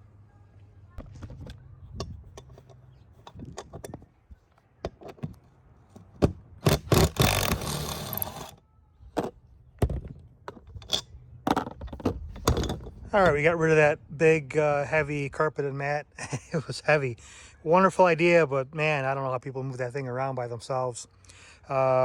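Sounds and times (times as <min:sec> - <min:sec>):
knocks clunks and clicks: 0:01.0 - 0:08.5, 0:09.2 - 0:13.4
loud scrape: 0:06.6 - 0:08.6.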